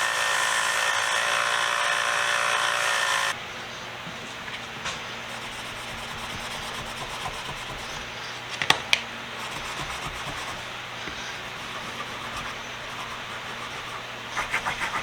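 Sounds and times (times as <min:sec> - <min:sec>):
belt sander motor hum: 0:00.0 - 0:03.4, 0:09.4 - 0:15.0
metal rubbing on sanding belt: 0:05.3 - 0:08.0, 0:09.4 - 0:15.0.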